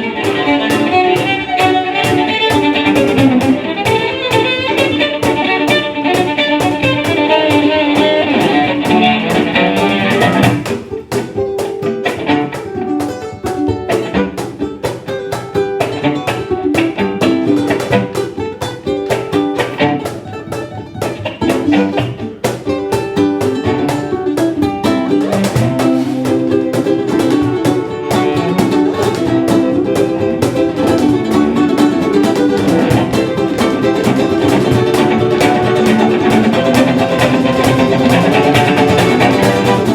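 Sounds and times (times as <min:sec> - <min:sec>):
fiddle melody: 0:00.0 - 0:39.9
plucked and strummed guitar: 0:00.0 - 0:39.9.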